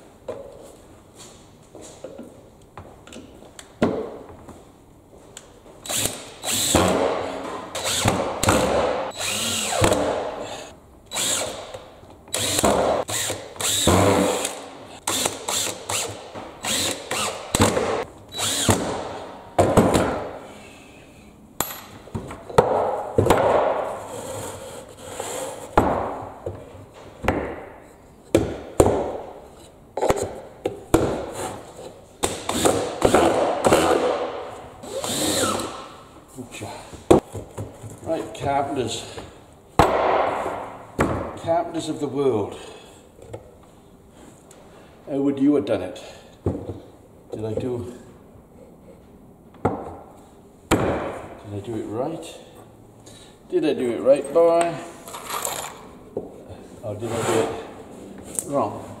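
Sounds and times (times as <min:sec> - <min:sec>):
power drill bursts: 0:09.1 - 0:11.7, 0:18.3 - 0:18.8.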